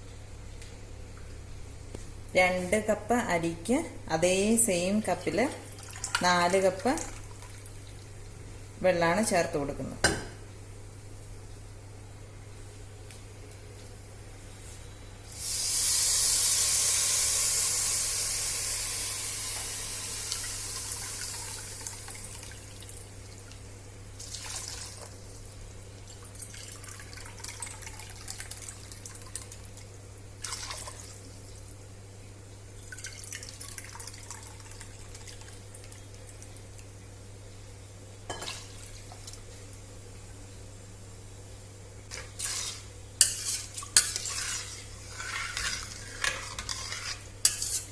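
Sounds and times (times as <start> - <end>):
water hissing in hot pot: 15.3 - 22.3.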